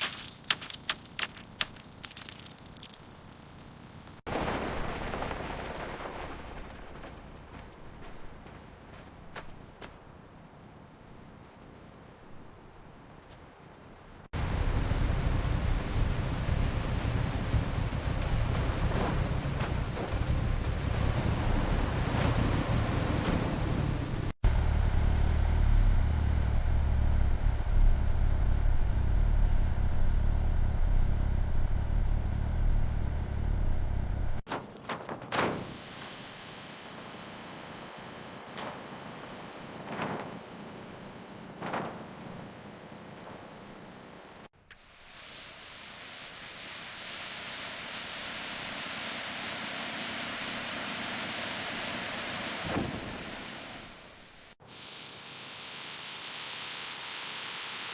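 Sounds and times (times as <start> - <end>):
vehicle engine rumbling: 23.5 - 34.5.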